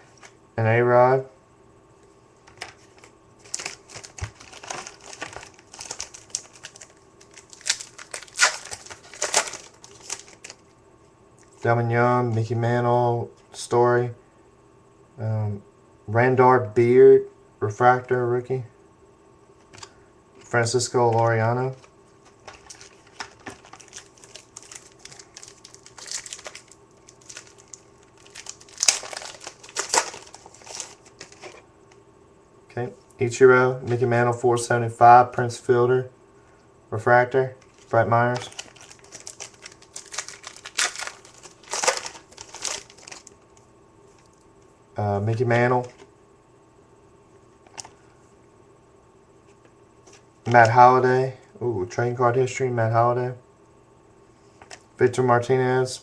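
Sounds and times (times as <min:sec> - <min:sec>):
foil wrapper crinkling and tearing: 0:02.6 - 0:10.6, 0:22.4 - 0:31.6, 0:37.6 - 0:43.4, 0:47.7 - 0:48.0.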